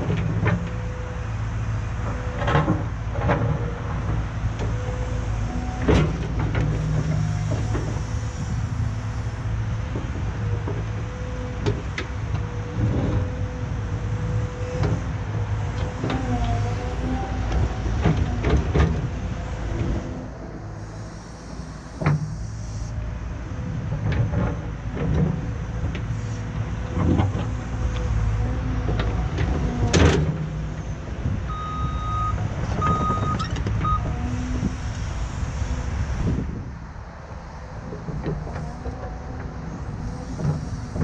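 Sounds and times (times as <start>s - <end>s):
heavy diesel engine drone: 0.0s - 41.0s
thin steady whine: 4.6s - 12.0s, 15.6s - 23.9s, 25.5s - 28.6s, 31.4s - 41.0s.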